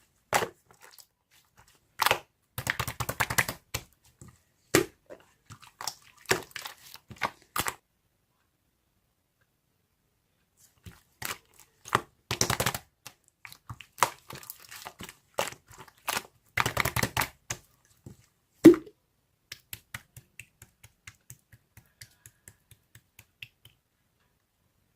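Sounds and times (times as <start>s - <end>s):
rustling crinkling handling noise: 13.1s - 16.6s.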